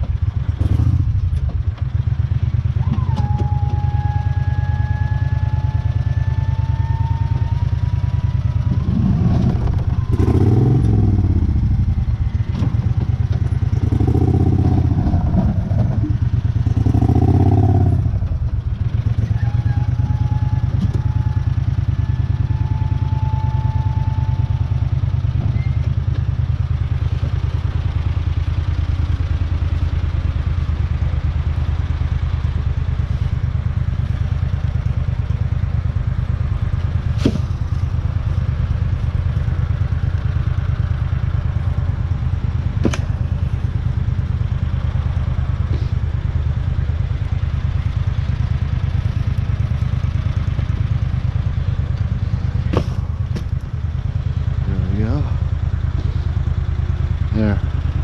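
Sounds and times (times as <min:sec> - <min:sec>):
utility vehicle engine running: 0:00.0 - 0:58.0
sharp knocks: 0:52.7 - 0:53.5.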